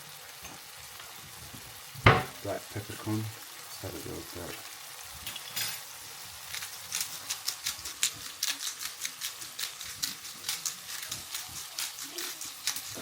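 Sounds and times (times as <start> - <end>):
faint sizzle from pan: 0.0 - 13.0
pepper mill grinding: 4.4 - 13.0.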